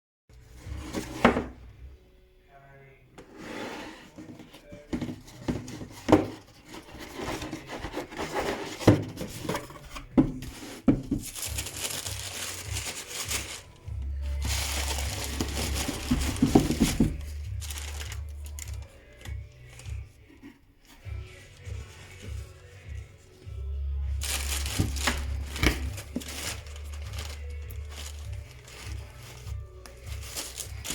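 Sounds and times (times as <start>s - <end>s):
box knocking: 4.3s - 11.7s, 14.4s - 18.0s, 24.2s - 27.4s
paper crinkling and tearing: 5.7s - 20.0s, 24.2s - 30.9s.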